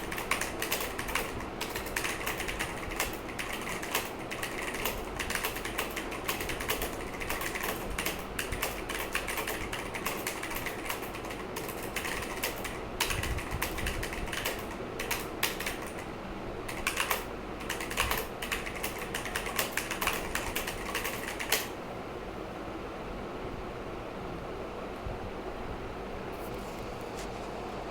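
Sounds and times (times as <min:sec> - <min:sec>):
clicky keyboard typing: 0:00.0 - 0:16.1, 0:16.7 - 0:21.8.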